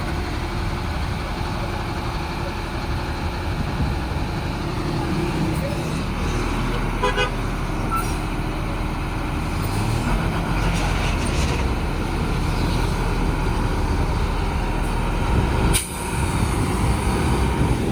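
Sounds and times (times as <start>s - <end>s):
truck engine running: 0.0s - 17.9s.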